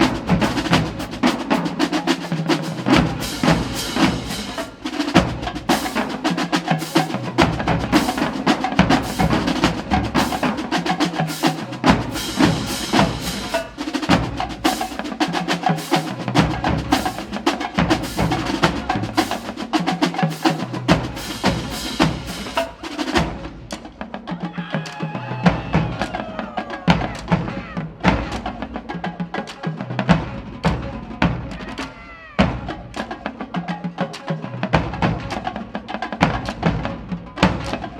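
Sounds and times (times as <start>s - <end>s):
snare drum strokes: 0.0s - 37.9s
bass drums: 2.8s - 6.1s, 7.4s - 10.6s, 11.8s - 15.0s, 20.9s - 23.8s.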